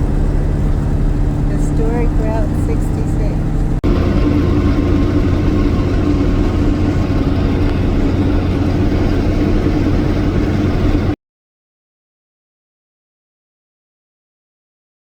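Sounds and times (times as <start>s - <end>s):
road rumble: 0.0s - 11.2s
vehicle engine drone: 0.0s - 11.2s.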